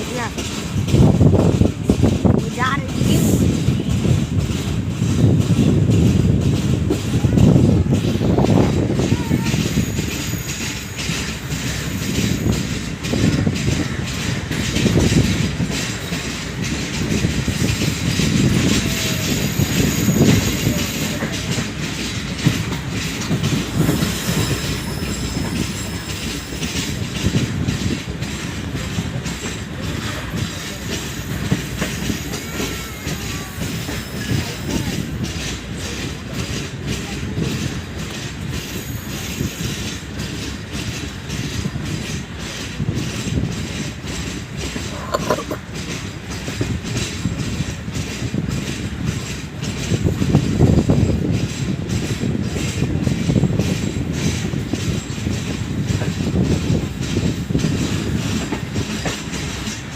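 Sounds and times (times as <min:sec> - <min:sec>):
train rolling rumble: 0:00.0 - 0:59.9
wheels clacking over rails: 0:00.0 - 0:59.9
high wheel squeals: 0:09.3 - 0:12.5, 0:23.8 - 0:27.0, 0:38.6 - 0:39.9.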